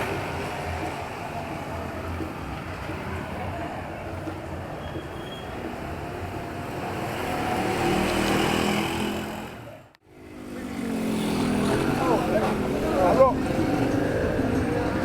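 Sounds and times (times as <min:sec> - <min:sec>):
vehicle engine passing: 0:10.3 - 0:15.0.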